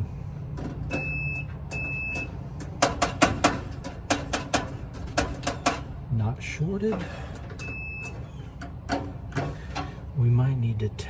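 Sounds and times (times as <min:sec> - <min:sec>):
multimeter beeps: 0:00.9 - 0:02.3, 0:07.6 - 0:08.2.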